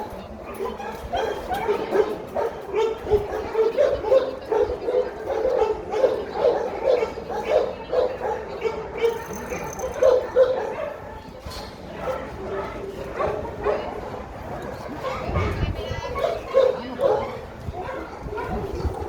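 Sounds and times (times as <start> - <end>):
dog yipping: 5.6 - 11.0.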